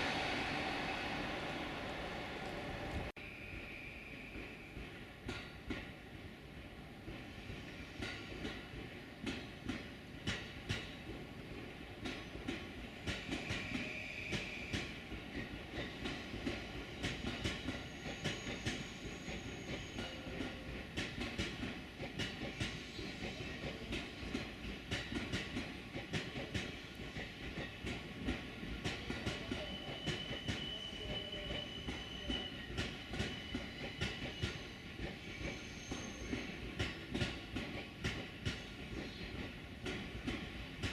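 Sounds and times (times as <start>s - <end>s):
train wheels clacking over rail joints: 7.1s - 40.9s
faint high wheel squeals: 13.3s - 14.9s, 17.1s - 20.6s, 29.3s - 36.7s.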